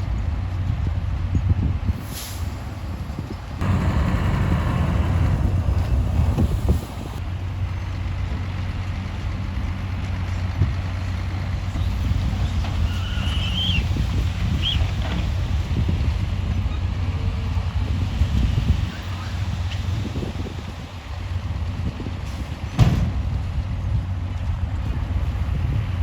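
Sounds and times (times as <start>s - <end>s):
diesel engine droning: 0.3s - 26.0s
rushing sound: 2.0s - 7.2s.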